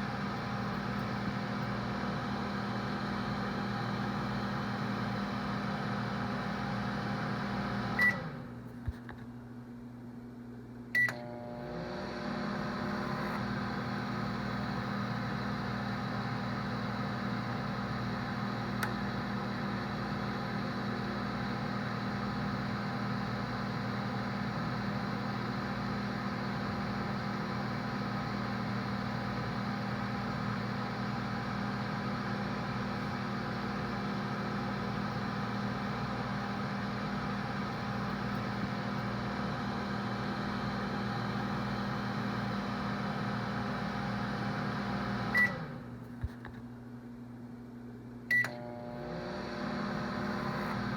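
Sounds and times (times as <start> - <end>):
microwave oven humming: 0.0 - 50.9
microwave beep: 6.9 - 8.5, 11.0 - 11.6, 45.1 - 45.8, 48.3 - 49.0.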